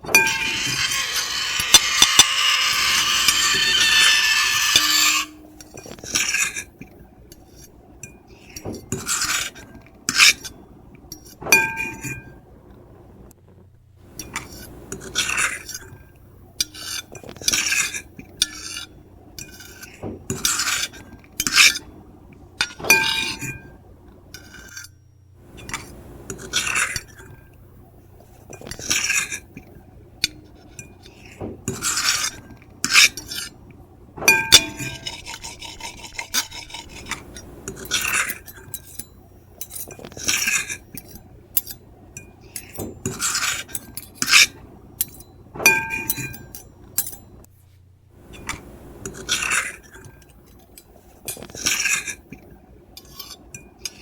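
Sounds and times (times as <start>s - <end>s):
cutlery scraping a plate: 0.0s - 12.4s, 14.1s - 21.9s, 22.6s - 23.8s, 24.4s - 25.0s, 25.6s - 27.5s, 28.2s - 33.6s, 34.2s - 47.4s, 48.3s - 54.0s
cutlery clinking on plate: 0.1s - 6.7s, 11.2s - 12.4s, 22.6s - 23.8s, 34.2s - 35.9s, 36.5s - 47.4s.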